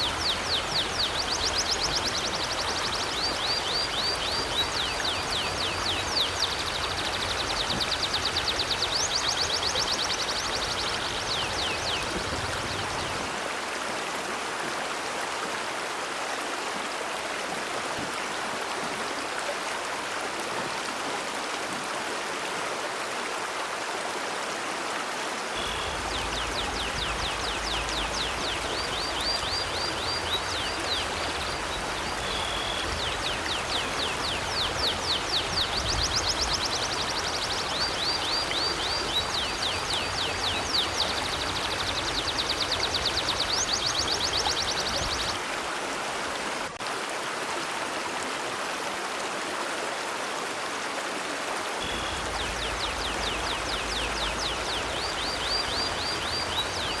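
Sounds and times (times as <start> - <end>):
small birds chirping: 0.0 - 13.1, 25.6 - 45.4, 51.8 - 57.0
river flowing: 0.0 - 57.0.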